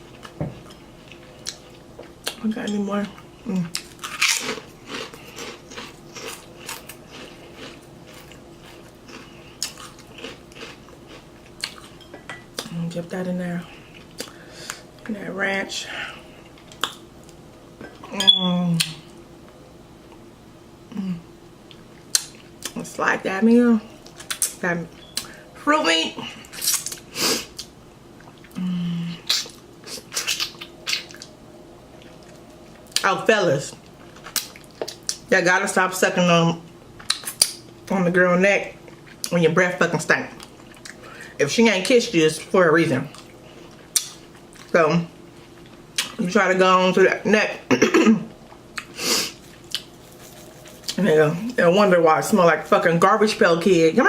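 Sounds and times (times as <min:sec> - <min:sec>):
wet chewing of fruit: 0:03.6 - 0:12.0, 0:48.5 - 0:51.6
person humming mmm: 0:20.9 - 0:21.3, 0:28.5 - 0:29.4.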